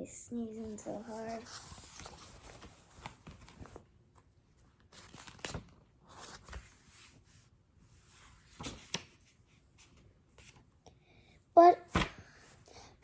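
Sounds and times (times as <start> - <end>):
paper pages rustling: 0.6 - 7.4, 8.1 - 10.7.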